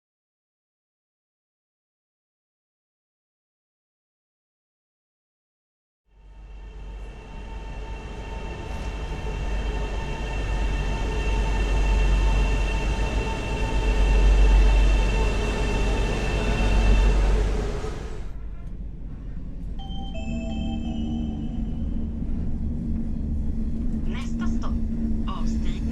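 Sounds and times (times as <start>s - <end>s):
electric train rumble and whine: 6.1s - 25.9s.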